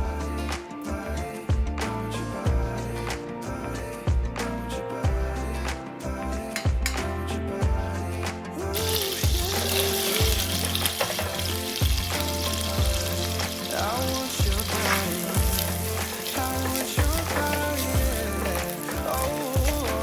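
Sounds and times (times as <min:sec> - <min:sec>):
background pop music: 0:00.0 - 0:20.0
food sizzling in frying pan: 0:08.8 - 0:20.0.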